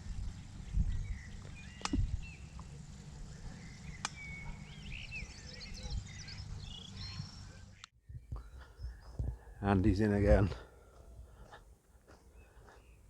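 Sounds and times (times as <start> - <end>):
wind buffeting microphone: 0.0 - 6.9, 8.1 - 10.6
small birds chirping: 0.0 - 13.0.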